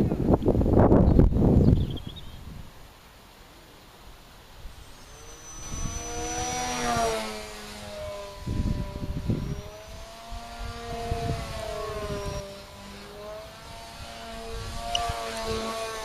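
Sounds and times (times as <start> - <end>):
model plane propeller buzzing: 4.1 - 16.0.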